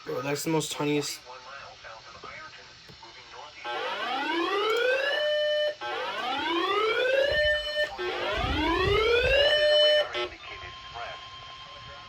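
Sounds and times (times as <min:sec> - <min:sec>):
electronic siren alert tone: 0:03.7 - 0:10.3.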